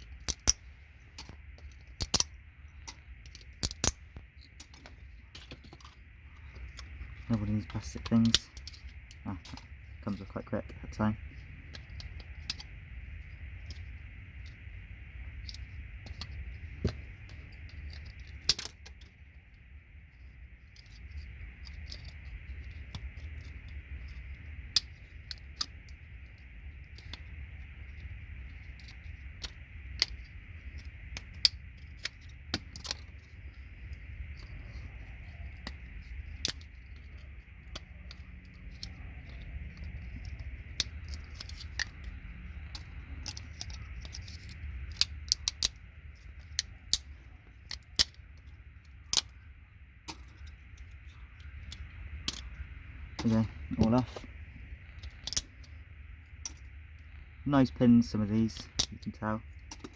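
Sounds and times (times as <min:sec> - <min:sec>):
steady low hum: 0:00.0 - 0:59.9
plastic clicks and snaps: 0:00.2 - 0:00.6, 0:01.2 - 0:05.9, 0:35.5 - 0:48.5, 0:51.6 - 0:54.3, 0:54.9 - 0:55.5.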